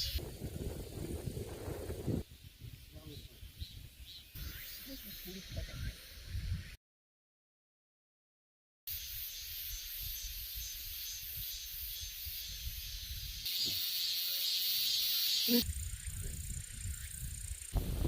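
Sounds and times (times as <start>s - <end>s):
low wind rumble: 0.0s - 4.0s, 15.6s - 18.0s
high insect drone: 0.0s - 6.7s, 8.9s - 18.0s
insect buzzing: 0.0s - 6.8s, 8.9s - 18.0s
insects chirping: 0.0s - 6.8s, 8.9s - 18.0s.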